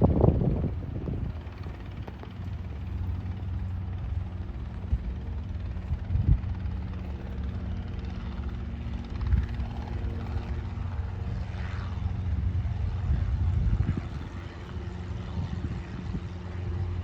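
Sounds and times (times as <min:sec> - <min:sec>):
helicopter rotor drone: 0:00.0 - 0:17.0.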